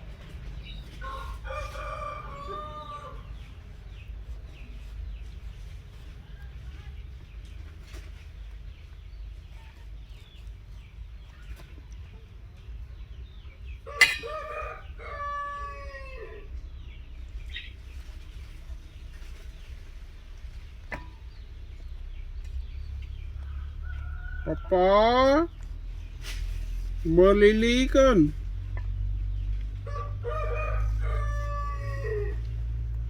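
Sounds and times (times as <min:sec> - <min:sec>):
low steady rumble: 0:00.0 - 0:33.0
rooster crowing: 0:01.0 - 0:03.4, 0:13.9 - 0:16.5, 0:29.8 - 0:32.6.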